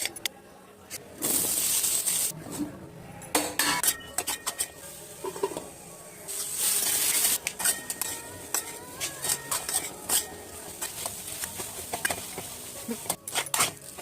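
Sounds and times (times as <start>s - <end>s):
food sizzling: 1.2s - 2.4s, 4.1s - 14.0s
spoon scraping a pan: 6.3s - 14.0s.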